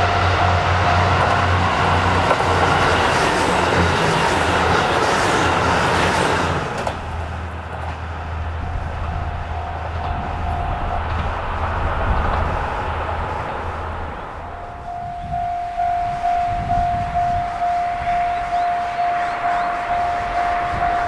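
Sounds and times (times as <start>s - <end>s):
low steady drone: 0.0s - 3.0s, 8.0s - 21.0s
diesel train passing at speed: 0.0s - 21.0s.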